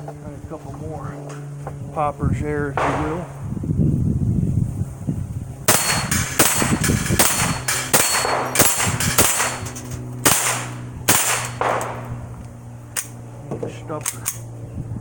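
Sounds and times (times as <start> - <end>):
rifle gunshots: 2.8 - 3.7, 5.7 - 12.3
bullets ringing off steel plates: 5.7 - 12.2.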